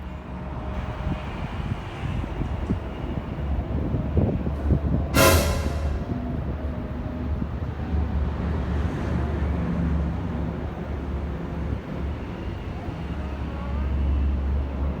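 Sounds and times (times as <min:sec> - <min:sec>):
wind on microphone: 0:00.8 - 0:08.5.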